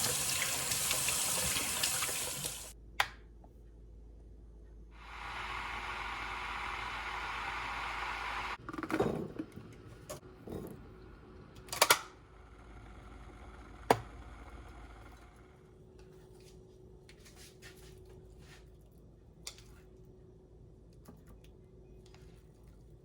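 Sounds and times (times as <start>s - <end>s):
steady hiss: 5.0s - 8.6s.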